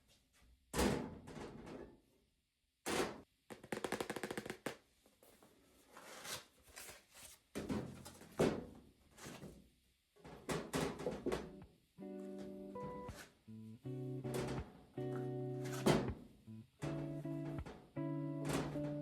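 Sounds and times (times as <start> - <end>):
handling noises: 14.2 - 16.2.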